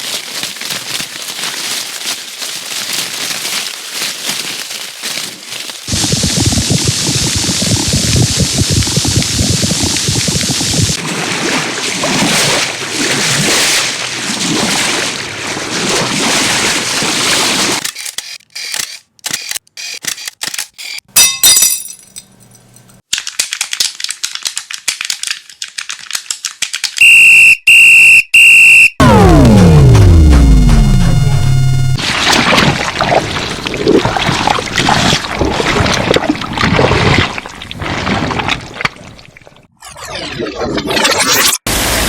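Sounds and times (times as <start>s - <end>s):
piercing electronic beeps: 27.0s - 35.0s.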